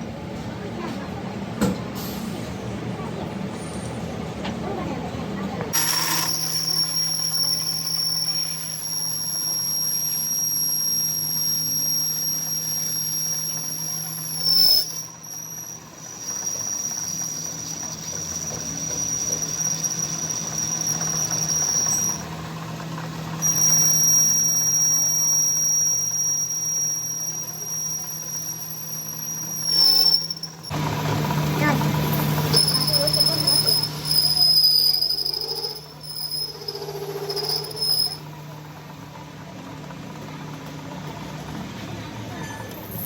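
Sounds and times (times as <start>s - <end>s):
high-pitched mechanical squeal: 3.5s - 4.1s, 5.8s - 22.5s, 23.4s - 38.8s, 42.3s - 43.0s
low machine hum: 4.6s - 43.0s.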